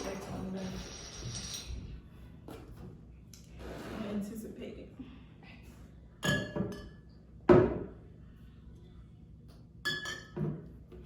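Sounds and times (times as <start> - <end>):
bottles clinking: 6.2 - 6.9.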